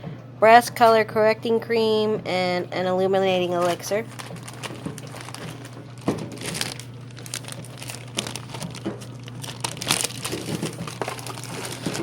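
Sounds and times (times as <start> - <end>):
low electrical hum: 0.0 - 12.0
packaging crinkling: 3.5 - 12.0.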